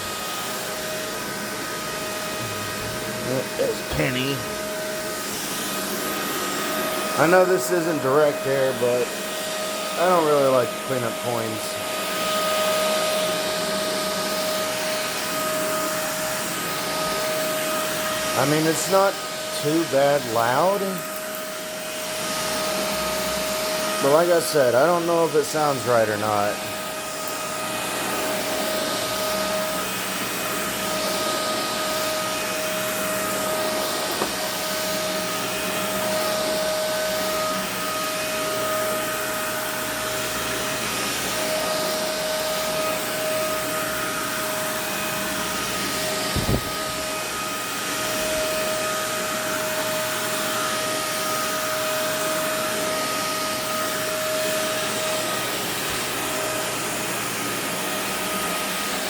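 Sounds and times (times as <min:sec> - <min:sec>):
vacuum cleaner running: 0:00.0 - 0:59.0
short thump: 0:46.4 - 0:46.8.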